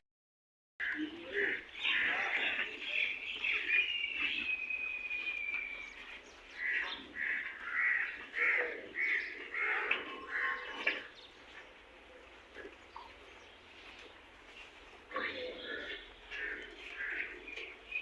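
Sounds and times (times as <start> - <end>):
crow cawing: 0.9 - 2.5, 6.6 - 10.8, 15.6 - 17.5.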